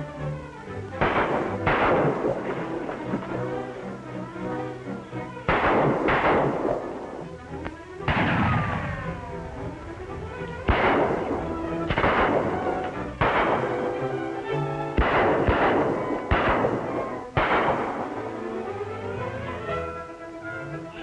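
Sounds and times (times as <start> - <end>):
background music: 0.0 - 21.0
echoing gunshots: 0.9 - 3.8, 5.4 - 7.4, 8.0 - 18.7
falling whine: 6.5 - 15.0.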